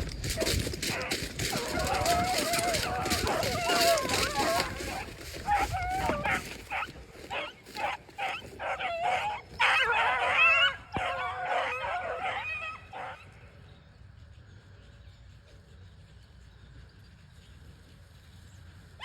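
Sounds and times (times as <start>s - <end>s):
dogs baying: 0.0s - 13.5s.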